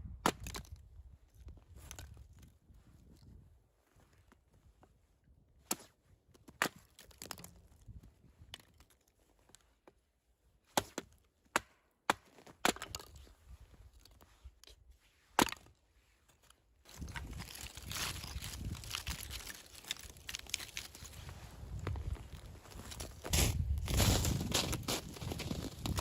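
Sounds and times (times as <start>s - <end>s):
wood chopping strikes: 10.8s - 13.1s, 15.4s - 15.7s.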